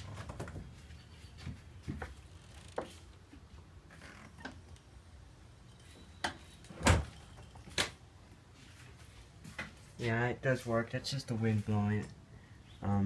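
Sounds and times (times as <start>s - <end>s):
door shutting with loud thud: 6.8s - 7.1s.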